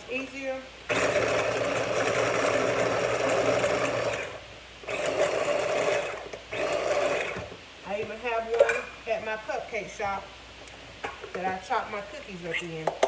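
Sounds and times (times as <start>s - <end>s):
electric food chopper running: 0.9s - 7.5s.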